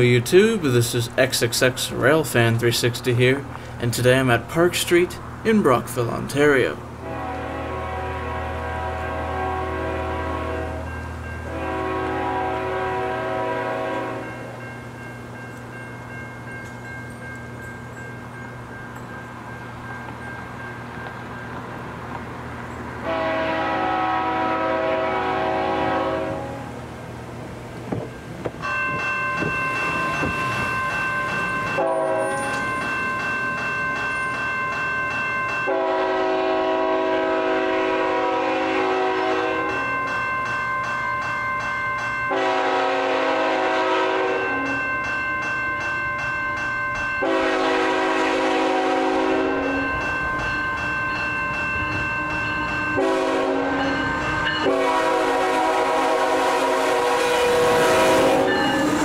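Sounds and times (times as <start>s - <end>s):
railway crossing bell ringing: 0.0s - 26.9s, 27.6s - 59.0s
train air horn blasts: 7.0s - 14.5s, 23.0s - 26.8s, 31.8s - 32.6s, 35.7s - 39.8s, 42.3s - 44.8s, 47.2s - 49.9s, 52.9s - 58.9s.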